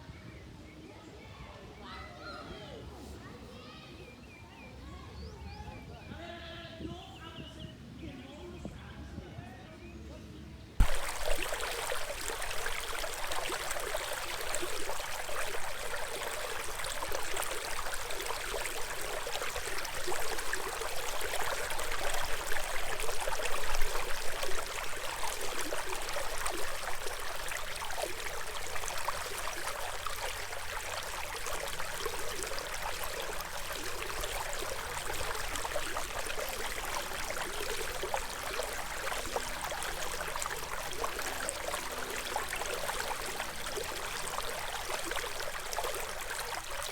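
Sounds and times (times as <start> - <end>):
stream water flowing: 10.8 - 46.9.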